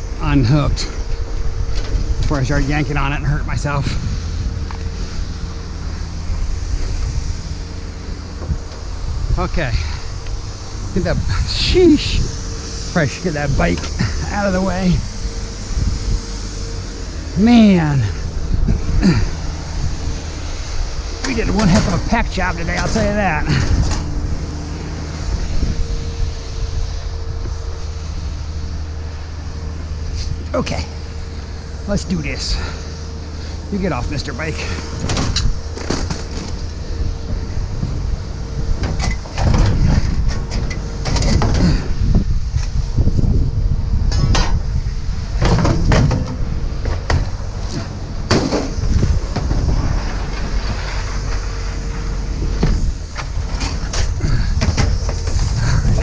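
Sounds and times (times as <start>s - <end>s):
engine idling: 0.0s - 56.0s
steady low rumble: 0.0s - 56.0s
scrap metal clanking and rattling: 34.6s - 36.8s, 38.8s - 42.8s, 45.4s - 56.0s.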